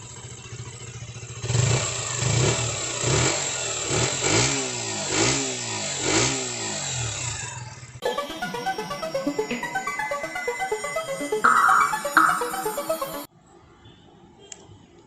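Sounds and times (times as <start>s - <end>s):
motorcycle engine idling and revving: 0.0s - 8.0s.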